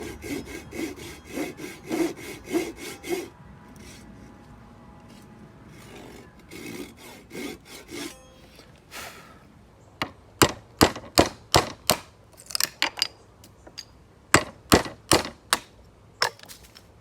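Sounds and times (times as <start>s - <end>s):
hand saw cutting wood: 0.0s - 4.4s, 5.0s - 9.2s.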